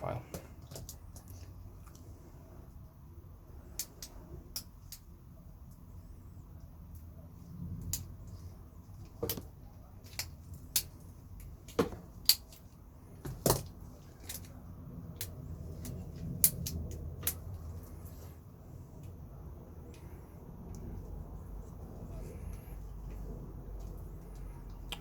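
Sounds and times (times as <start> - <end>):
sharp metal snaps: 12.1 - 12.6, 15.1 - 17.6
metal multi-tools clicking: 15.2 - 17.5.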